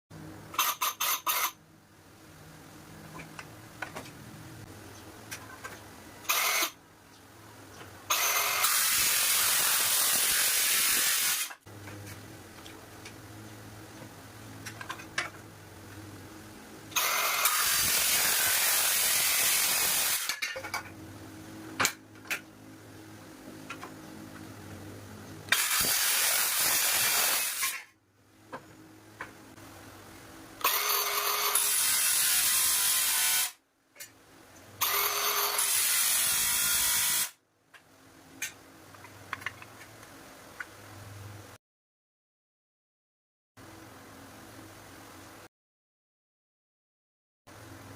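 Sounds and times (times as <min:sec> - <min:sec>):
circular saw cutting steel: 0:06.3 - 0:06.8, 0:08.1 - 0:11.6, 0:17.0 - 0:20.4, 0:25.5 - 0:27.9, 0:30.6 - 0:33.6, 0:34.8 - 0:37.4.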